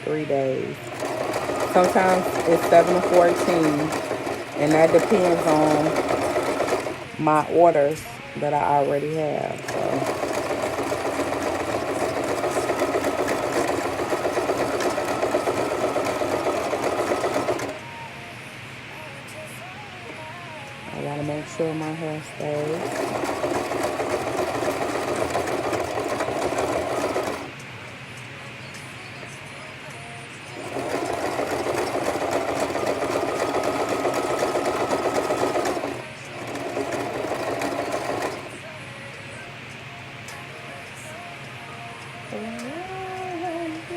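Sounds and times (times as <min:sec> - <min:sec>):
sewing machine stitching: 0:00.0 - 0:08.0, 0:09.3 - 0:17.8, 0:21.0 - 0:27.6, 0:30.5 - 0:38.7.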